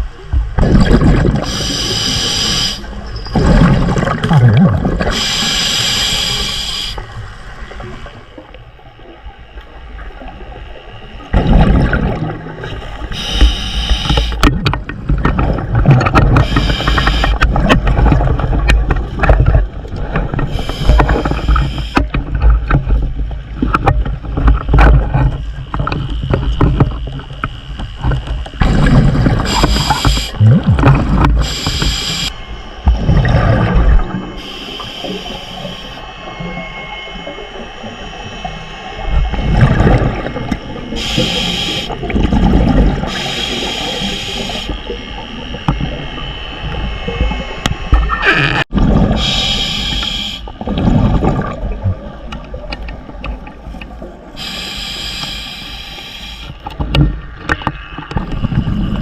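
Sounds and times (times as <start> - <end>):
exhaled bubbles: 0.0 - 7.0, 11.3 - 22.1, 28.6 - 32.3, 32.9 - 37.4, 38.4 - 55.0
diver breathing through regulator: 1.4 - 3.0, 5.0 - 7.1, 12.7 - 14.4, 16.3 - 17.4, 20.5 - 22.1, 29.4 - 30.4, 31.0 - 32.4, 40.9 - 42.0, 43.0 - 44.9, 49.1 - 50.6, 54.4 - 56.6.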